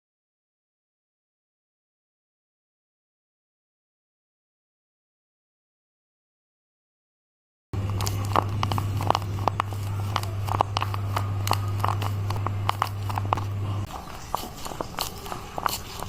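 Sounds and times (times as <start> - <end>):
low electrical hum: 7.8 - 16.0
paper crinkling: 7.8 - 16.0.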